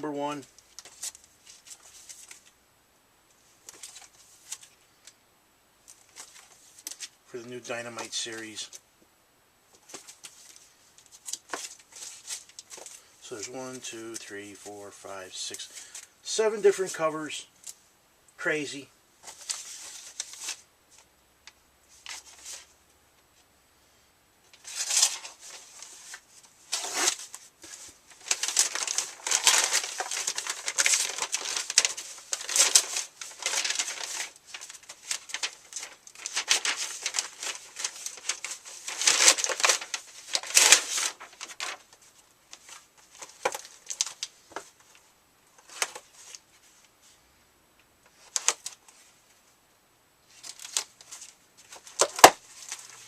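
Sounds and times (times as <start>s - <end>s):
plastic and paper crinkling: 0.0s - 2.6s, 3.5s - 5.2s, 5.9s - 8.8s, 9.7s - 14.3s, 19.2s - 21.1s, 21.9s - 22.8s, 24.5s - 46.9s, 48.1s - 49.2s, 50.3s - 53.0s
packaging tearing: 26.7s - 27.3s, 28.1s - 41.8s, 51.8s - 52.9s.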